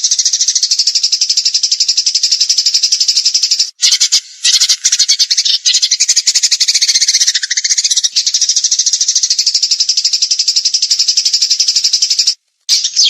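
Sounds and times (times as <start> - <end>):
songbird rattling trill: 0.0 - 13.0.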